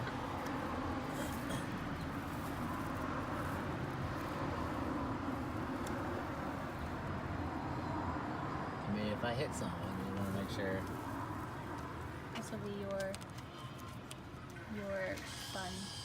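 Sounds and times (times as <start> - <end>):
vehicle engine running: 0.0 - 8.2
outdoor street noise: 0.0 - 16.0.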